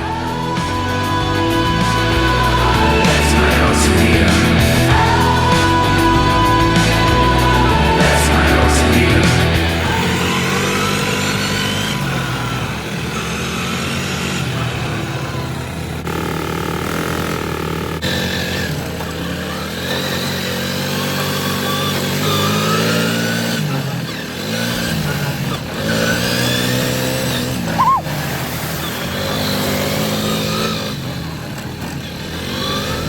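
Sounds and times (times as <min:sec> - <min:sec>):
quad bike engine revving: 0:00.0 - 0:33.0
short high squeak: 0:27.8 - 0:28.1.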